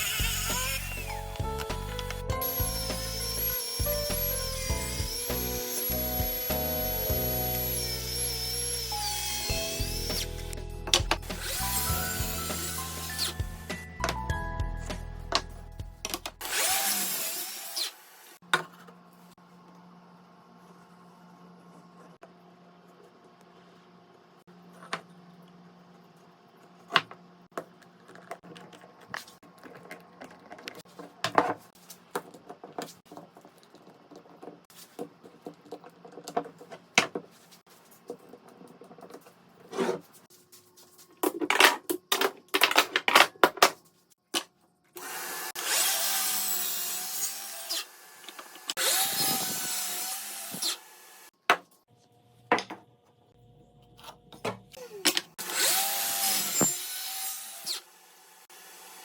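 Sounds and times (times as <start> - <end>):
power tool running: 0.0 - 1.2, 2.4 - 10.6, 11.2 - 13.4, 16.4 - 18.4, 45.0 - 51.3, 54.8 - 59.0.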